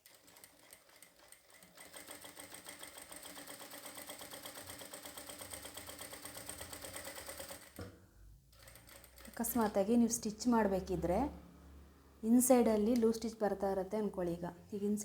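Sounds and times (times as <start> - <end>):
sewing machine stitching: 0.0 - 7.9, 8.5 - 9.9.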